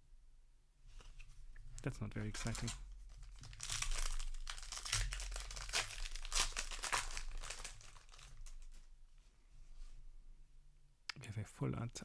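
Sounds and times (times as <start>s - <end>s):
plastic foil wrapper crinkling: 2.3s - 8.9s
wrapper tearing: 2.4s - 8.9s.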